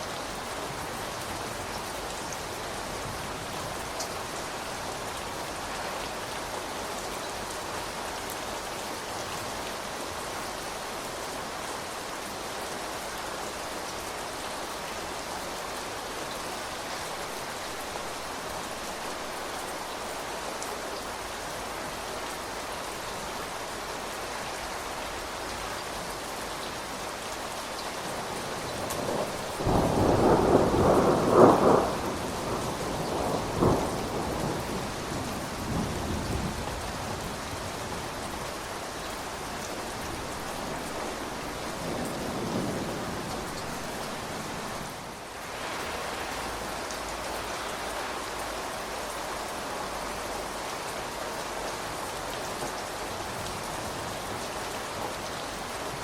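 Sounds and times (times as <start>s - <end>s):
steady rain falling: 0.0s - 56.0s
thunder rumble: 28.6s - 37.2s.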